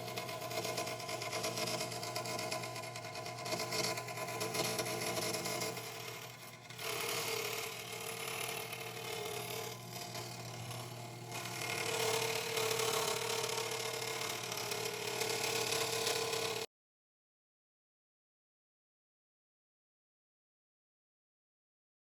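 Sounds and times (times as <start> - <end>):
scroll saw cutting: 0.0 - 16.7.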